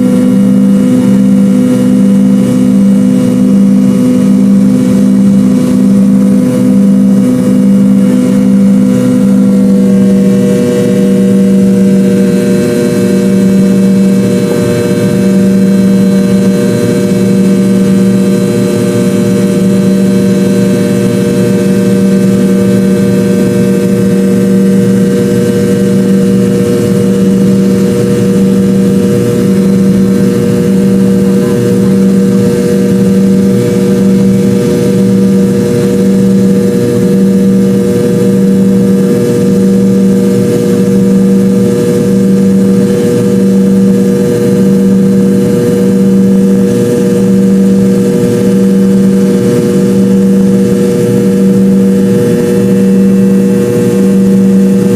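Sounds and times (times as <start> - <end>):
jet engines droning: 0.0 - 54.9.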